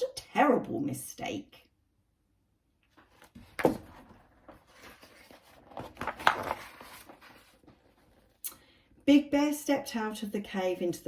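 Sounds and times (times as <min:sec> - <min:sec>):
book pages rustling: 0:02.8 - 0:08.4.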